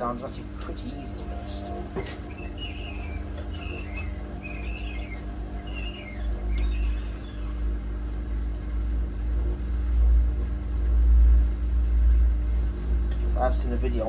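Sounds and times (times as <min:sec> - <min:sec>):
washing machine rumble and hum: 0:00.0 - 0:14.0
high squeaks: 0:01.4 - 0:07.5.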